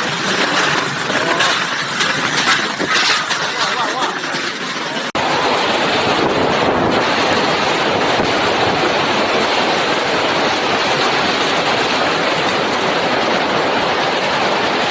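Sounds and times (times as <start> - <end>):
heavy rain: 0.0 - 14.9
wind rushing: 5.2 - 14.9.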